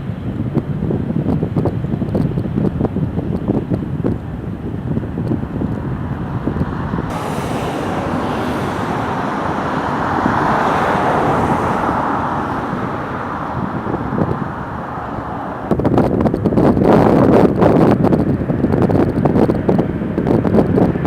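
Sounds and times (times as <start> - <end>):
wind rumble on microphone: 0.0 - 21.0
jet airliner passing: 3.6 - 16.8.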